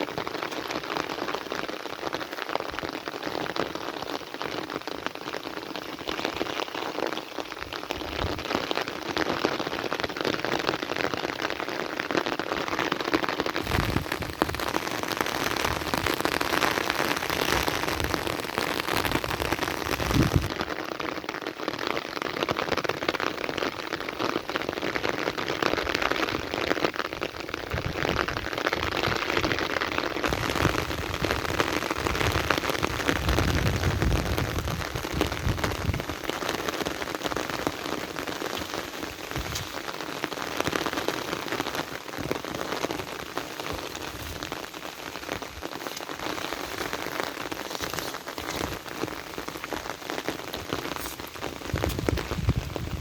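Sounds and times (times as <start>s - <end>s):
heavy rain falling: 0.0s - 53.0s
distant thunder rumbling: 13.6s - 20.5s.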